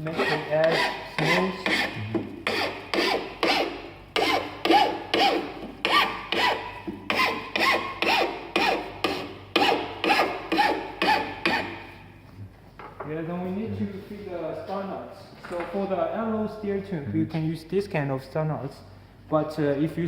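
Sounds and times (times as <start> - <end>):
file rasping on metal: 0.0 - 11.9.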